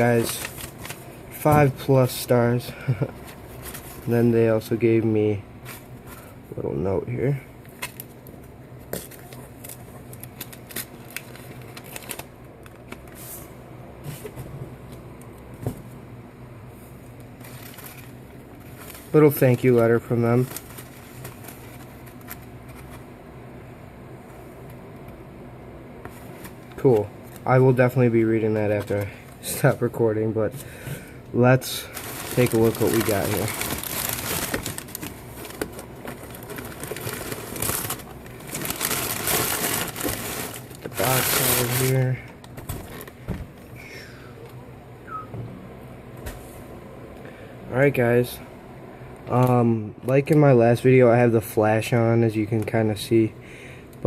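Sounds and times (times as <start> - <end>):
paper rustling and crinkling: 0.0 - 1.7, 8.9 - 13.4, 17.4 - 23.1, 31.6 - 43.2
steady low hum: 0.0 - 54.0.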